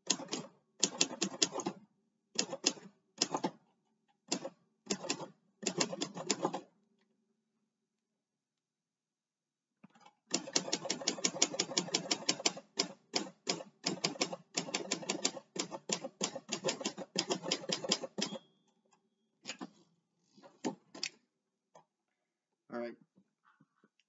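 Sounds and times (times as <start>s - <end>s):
manual typewriter typing: 10.4s - 18.4s.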